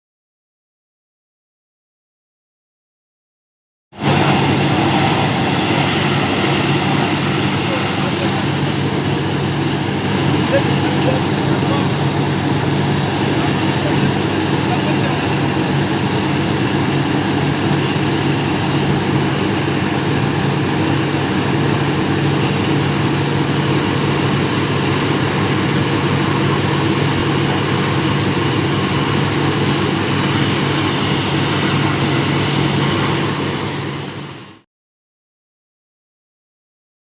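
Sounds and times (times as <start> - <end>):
drilling rig engine drone: 4.0 - 34.6.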